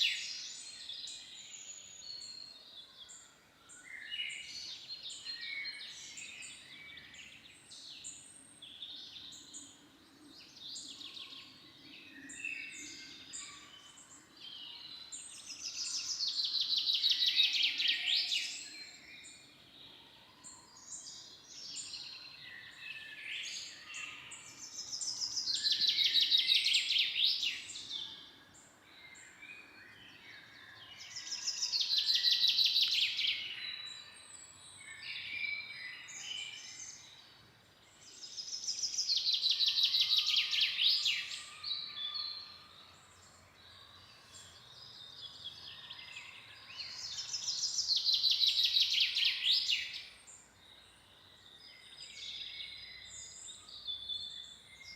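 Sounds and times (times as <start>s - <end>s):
birds chirping and singing: 3.1s - 54.9s.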